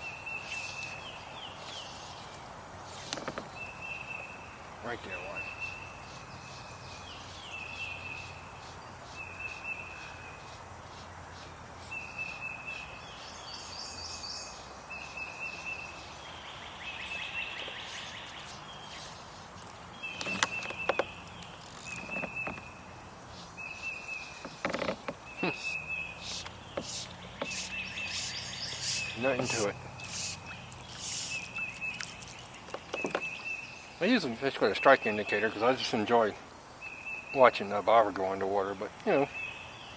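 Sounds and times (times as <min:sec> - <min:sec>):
higher chirps: 0:25.2 - 0:34.0.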